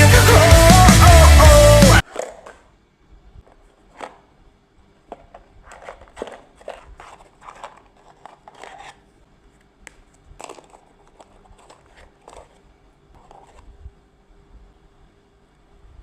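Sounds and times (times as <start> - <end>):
cards rustling and clicking: 2.0 - 2.7, 3.5 - 4.3, 5.1 - 13.7.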